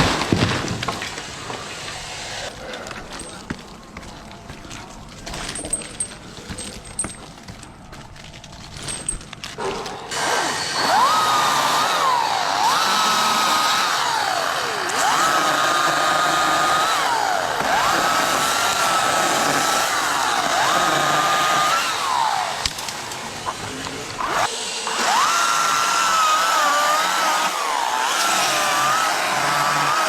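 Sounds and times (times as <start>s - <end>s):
chainsaw revving: 10.1s - 22.7s, 24.2s - 30.0s.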